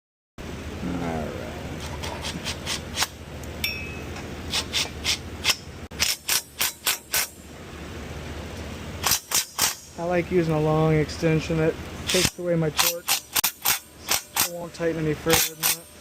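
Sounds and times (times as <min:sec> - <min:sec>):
metallic clink of tools: 0:03.6 - 0:04.2
hand ratchet clicking: 0:04.5 - 0:07.3, 0:09.0 - 0:09.9, 0:12.1 - 0:14.6, 0:15.3 - 0:15.9.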